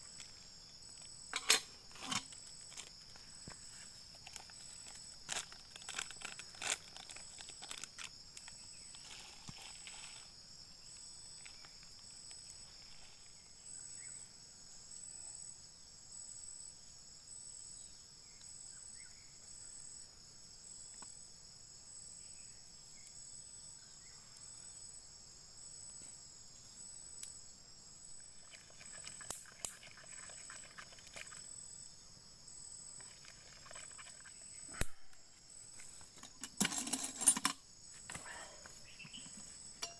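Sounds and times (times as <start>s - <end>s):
insects singing: 37.3s - 39.9s.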